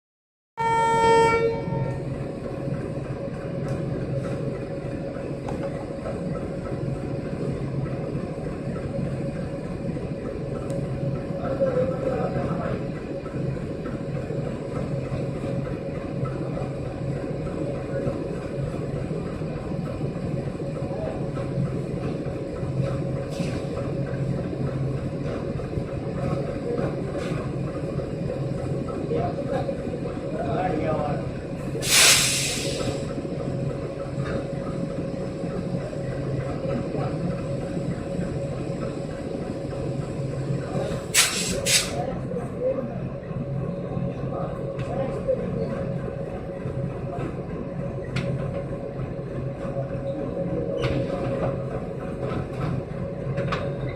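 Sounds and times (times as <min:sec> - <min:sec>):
train horn: 0:00.6 - 0:02.1
diesel train engine hum: 0:00.6 - 0:53.9.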